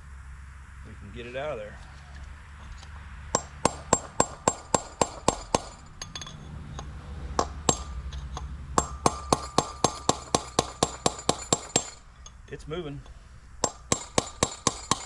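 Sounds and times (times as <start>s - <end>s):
hammer striking steel punch: 3.3s - 12.4s, 13.0s - 15.0s.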